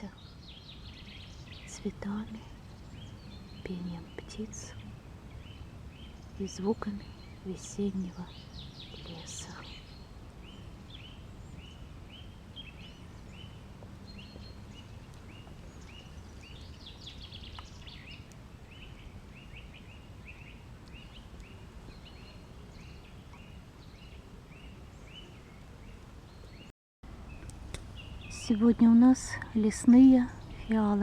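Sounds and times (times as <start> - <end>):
bird twittering: 0.0 - 31.0
low background rumble: 27.1 - 31.0.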